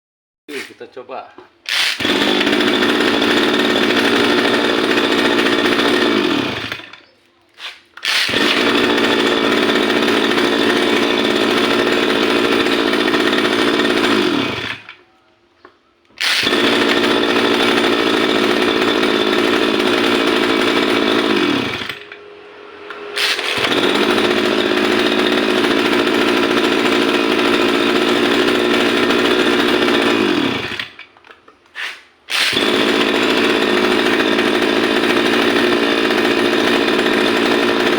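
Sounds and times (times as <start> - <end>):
brush cutter engine running: 0.5 - 15.2, 16.1 - 37.9.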